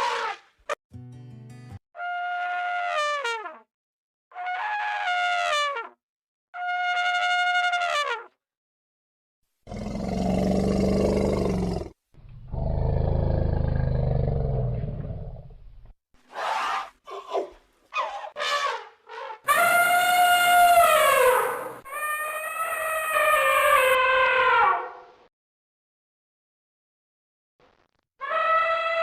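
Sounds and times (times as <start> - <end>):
low rough elephant roars: 9.7 - 15.5
elephant trumpeting: 18.0 - 24.9.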